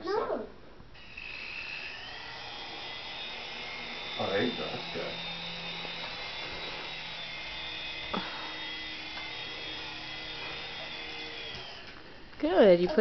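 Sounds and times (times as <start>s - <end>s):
toy helicopter rotors whirring: 1.0s - 13.0s.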